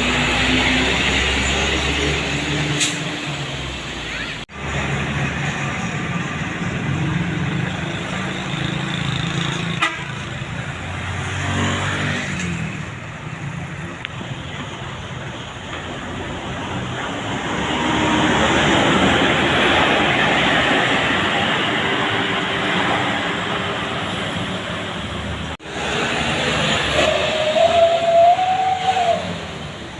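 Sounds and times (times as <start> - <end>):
diesel buses passing: 0.0 - 29.9
tyre and road noise: 0.0 - 29.9.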